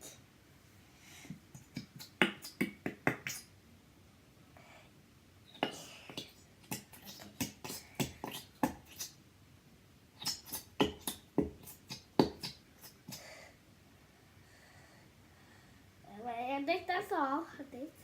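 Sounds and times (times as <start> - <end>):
glue bottle popping and squelching: 10.2 - 13.2.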